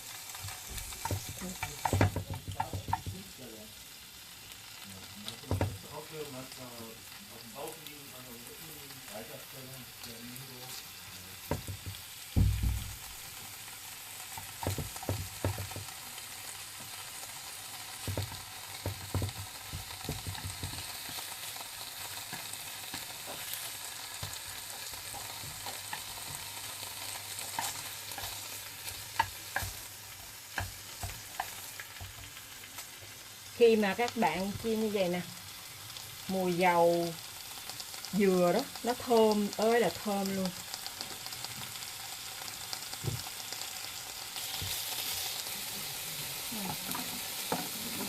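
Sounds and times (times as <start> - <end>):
crepes sizzling in oil: 0.0 - 48.0
utensil knocking on a pan: 0.4 - 3.3, 5.5 - 5.8, 11.5 - 13.1, 14.3 - 15.9, 18.0 - 21.2.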